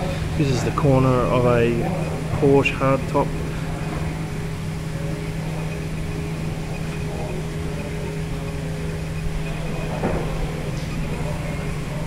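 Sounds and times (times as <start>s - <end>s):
machine hum: 0.0s - 12.0s.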